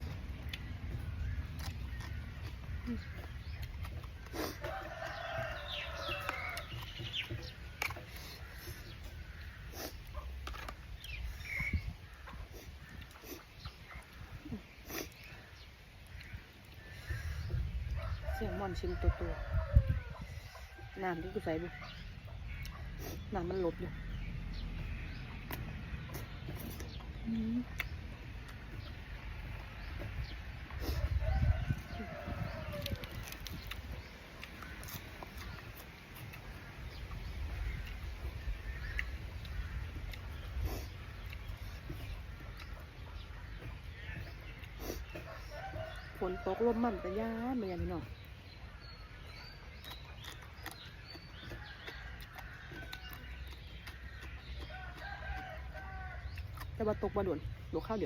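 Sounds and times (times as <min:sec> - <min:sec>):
steady low rumble: 0:00.0 - 0:20.5, 0:21.8 - 0:46.4
chickens clucking: 0:00.0 - 0:58.0.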